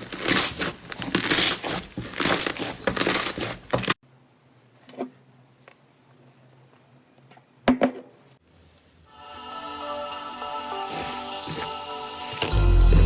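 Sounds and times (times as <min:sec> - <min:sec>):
slime crackling and crunching: 0:00.0 - 0:03.5.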